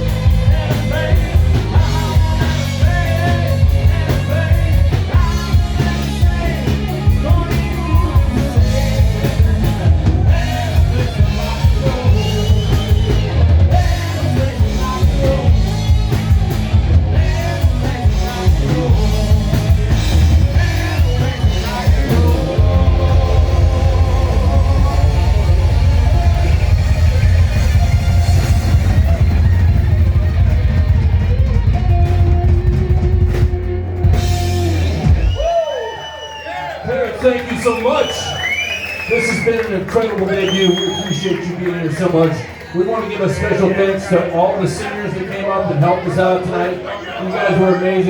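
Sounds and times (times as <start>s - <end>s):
person singing: 0.0s - 16.3s, 16.9s - 27.2s
live rock band: 0.0s - 46.8s.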